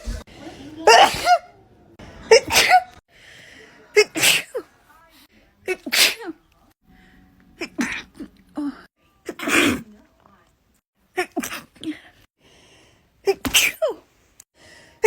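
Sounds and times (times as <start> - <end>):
person sneezing: 0.9 - 1.5, 2.3 - 3.0, 4.0 - 4.7, 5.7 - 6.3, 9.3 - 9.9, 11.2 - 11.7, 13.3 - 14.0.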